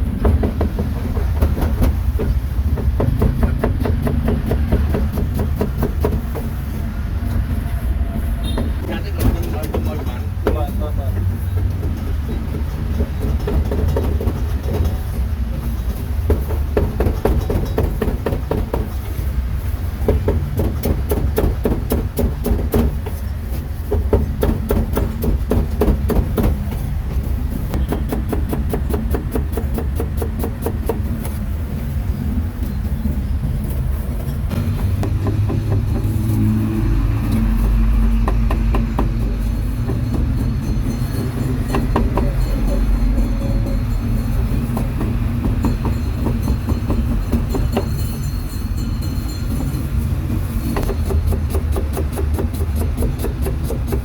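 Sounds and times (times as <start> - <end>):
sharp knocks: 0.0 - 6.6, 34.5 - 42.7
traffic rumble: 0.0 - 54.0.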